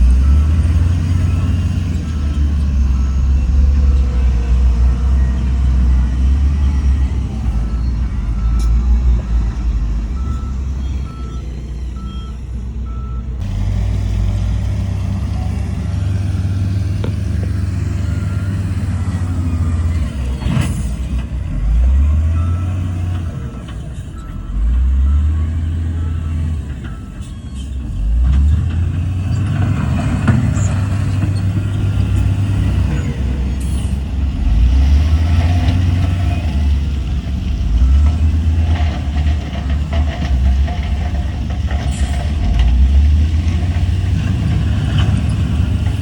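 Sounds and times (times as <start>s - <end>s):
heavy machinery diesel engines: 0.0s - 46.0s
reversing alarm beeps: 0.2s - 9.6s, 10.2s - 13.3s, 24.2s - 27.7s.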